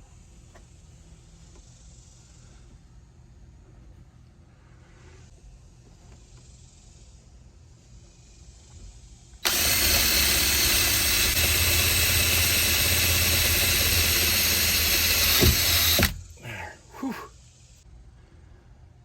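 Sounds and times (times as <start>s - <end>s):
cordless power drill running: 9.4s - 16.4s.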